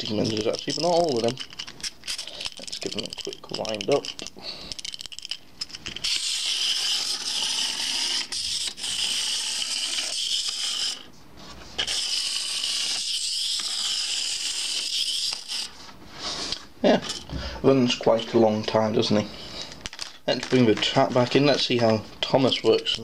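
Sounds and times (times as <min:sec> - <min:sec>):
clockwork toy winding clicks: 0:00.2 - 0:11.0
wind-up motor whirring: 0:06.0 - 0:11.0.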